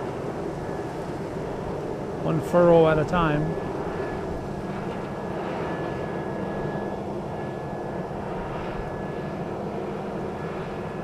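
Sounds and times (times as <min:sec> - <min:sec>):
farm machinery engine drone: 0:00.0 - 0:11.0.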